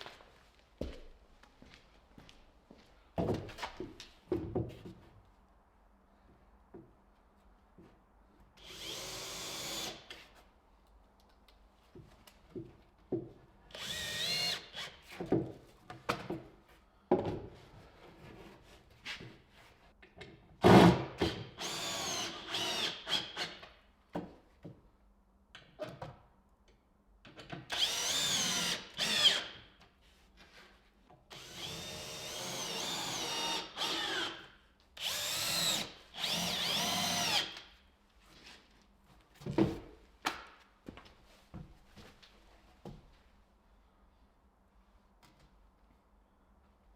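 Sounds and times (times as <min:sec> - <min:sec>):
power tool whining: 0:35.0 - 0:37.6.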